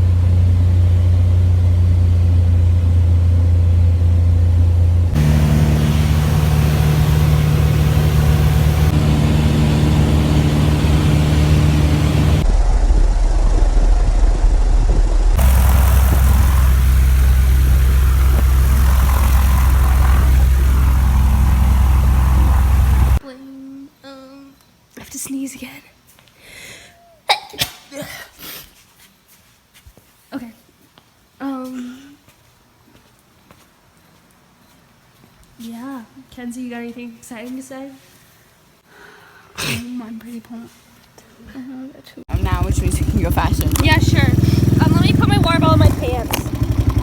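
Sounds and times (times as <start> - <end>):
vehicle engine running: 0.0 - 23.2, 42.3 - 47.0.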